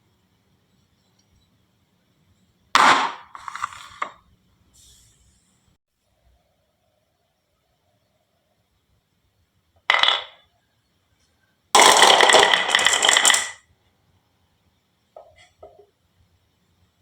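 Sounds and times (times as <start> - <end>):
marbles clattering on marble run: 9.9 - 10.4, 11.8 - 13.6.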